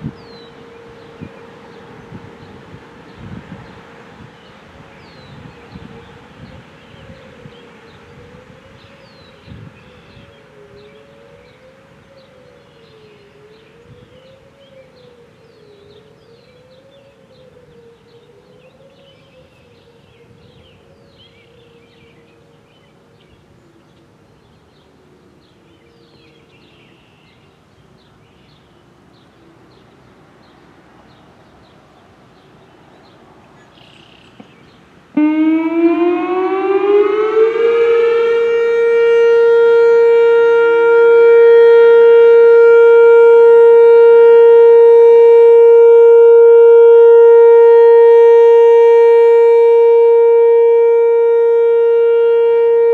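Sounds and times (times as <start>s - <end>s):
warning siren steady tone: 0.0s - 24.2s, 35.1s - 52.9s
distant wailing sirens: 0.0s - 26.8s, 29.1s - 52.9s.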